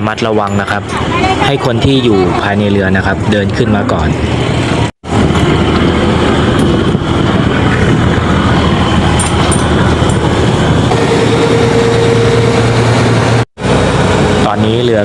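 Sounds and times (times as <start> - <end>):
boat engine running: 4.1 - 15.0
steady high tone: 8.2 - 14.9.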